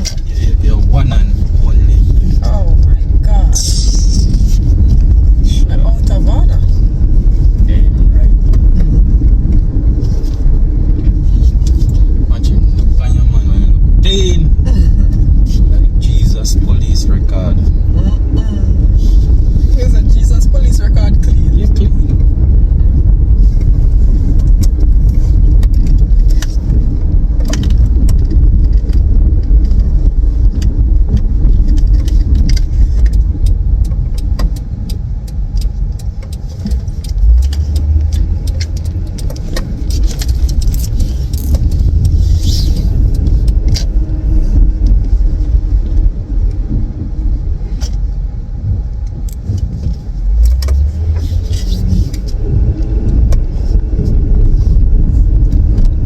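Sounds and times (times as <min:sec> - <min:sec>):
road and engine rumble in car: 0:00.0 - 0:56.0
small clicks and rattles: 0:27.4 - 0:43.9.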